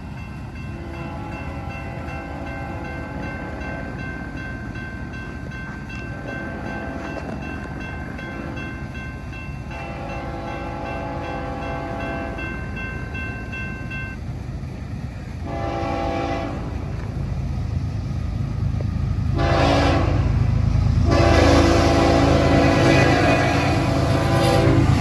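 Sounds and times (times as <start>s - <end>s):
low rumble of train: 0.0s - 25.0s
train horn blasts: 0.8s - 4.0s, 6.3s - 7.4s, 9.7s - 12.4s, 15.4s - 17.0s, 19.3s - 20.4s, 21.0s - 25.0s.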